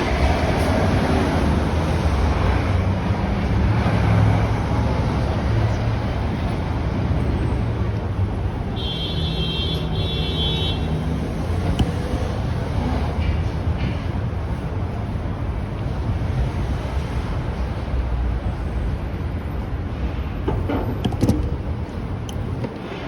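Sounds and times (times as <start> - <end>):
city street traffic rumble: 0.0 - 23.0.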